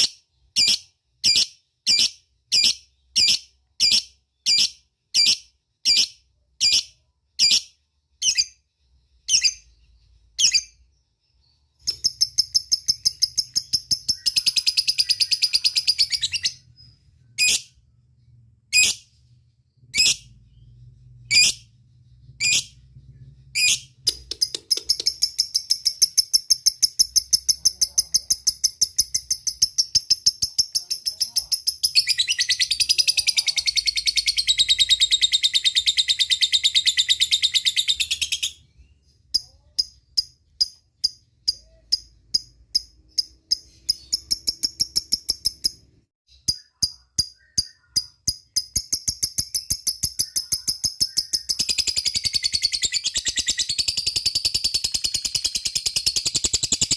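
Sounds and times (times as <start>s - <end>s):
bird chirping: 0.0s - 56.9s
bird chattering trill: 11.8s - 16.7s, 23.5s - 38.6s, 39.4s - 56.9s.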